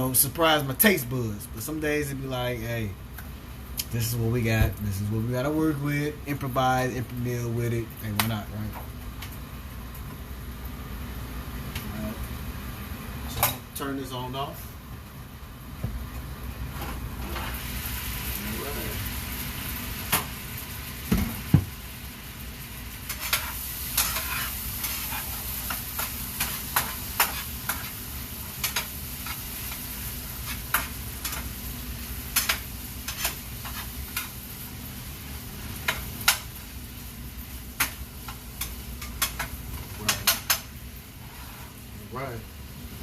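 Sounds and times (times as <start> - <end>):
beef sizzling in a frying pan: 0.0 - 43.0
utensil scraping a pan: 23.1 - 27.9.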